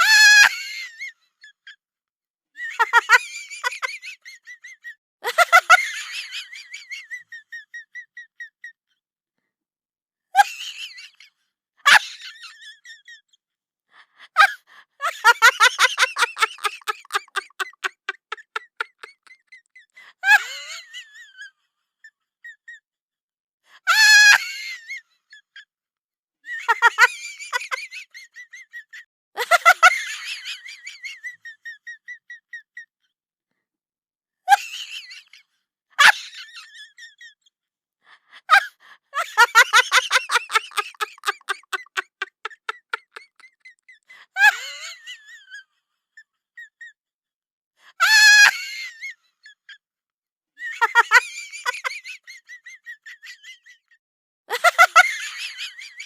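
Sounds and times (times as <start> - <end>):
high-pitched laughter-like vocalising: 0.0 - 1.8, 2.6 - 8.8, 14.2 - 22.8, 26.5 - 33.0, 34.5 - 37.5, 38.4 - 47.0, 48.0 - 49.8, 50.6 - 56.0.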